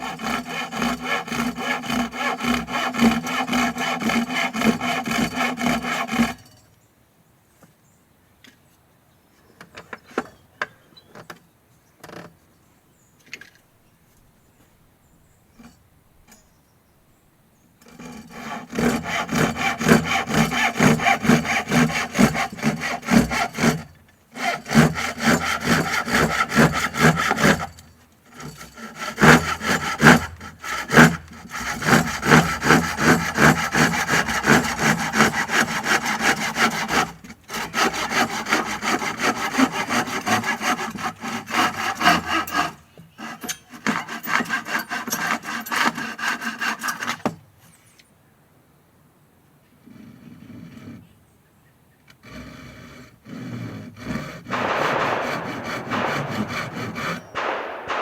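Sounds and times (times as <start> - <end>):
hand saw cutting wood: 0.0 - 6.6, 17.8 - 47.4, 52.1 - 58.0.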